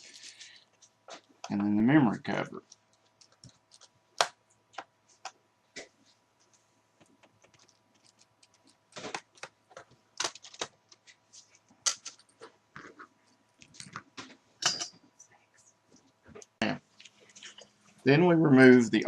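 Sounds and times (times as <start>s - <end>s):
plastic laptop parts clicking: 2.7s - 5.4s, 7.0s - 11.0s, 11.9s - 12.4s.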